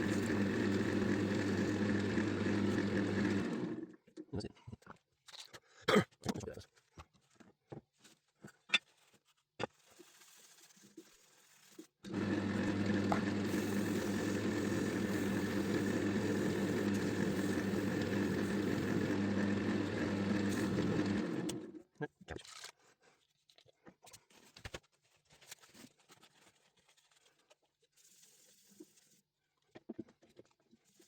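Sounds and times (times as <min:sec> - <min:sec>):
wood lathe motor hum: 0:00.0 - 0:03.9, 0:12.1 - 0:21.8.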